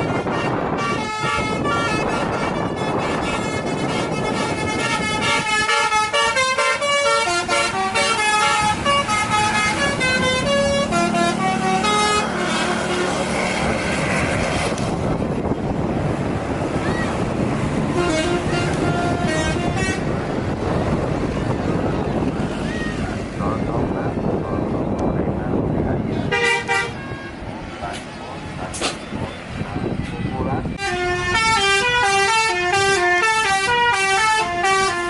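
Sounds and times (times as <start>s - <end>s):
musical air horn playing a tune: 0.0s - 13.2s, 17.9s - 20.1s, 26.3s - 27.1s, 30.8s - 35.0s
rushing noise: 7.3s - 32.0s.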